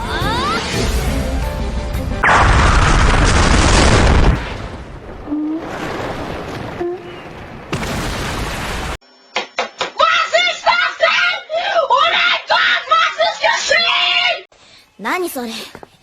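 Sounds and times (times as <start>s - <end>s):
explosion blast with deep rumble: 0.3s - 9.0s.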